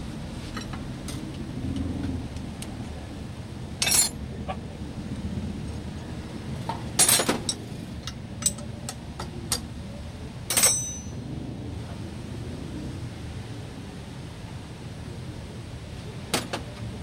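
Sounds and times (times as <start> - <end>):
steady low rumble: 0.0 - 17.0
sharp metallic clinks and knocks: 3.8 - 4.2, 10.5 - 11.2.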